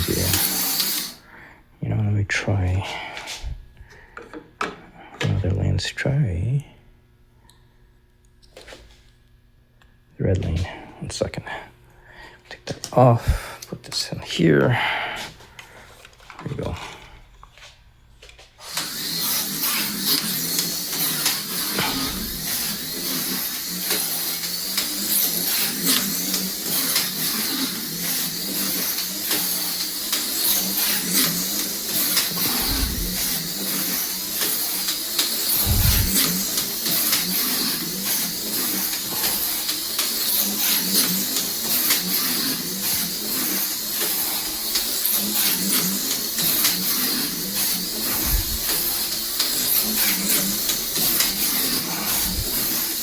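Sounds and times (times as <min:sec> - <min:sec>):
slot car motor whine: 0:00.0 - 0:02.8, 0:18.6 - 0:53.0.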